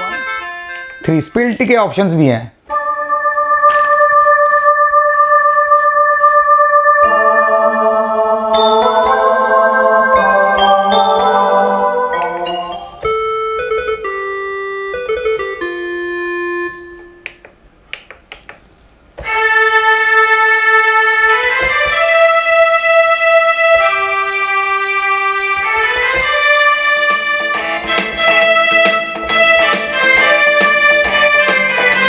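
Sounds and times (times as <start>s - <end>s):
mini keyboard notes: 0.0s - 1.5s, 2.7s - 18.5s, 19.1s - 32.0s
keyboard chords: 0.0s - 1.6s, 2.6s - 18.4s, 19.1s - 32.0s.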